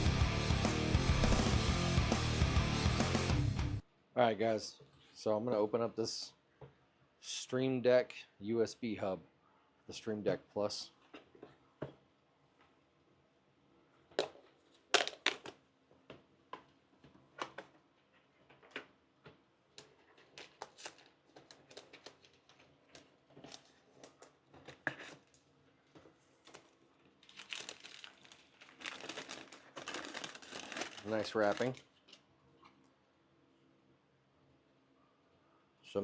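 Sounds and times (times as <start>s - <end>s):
cardboard packaging clicks and scrapes: 19.9s - 25.4s, 26.0s - 31.8s
plastic wrap crinkling: 20.0s - 32.2s.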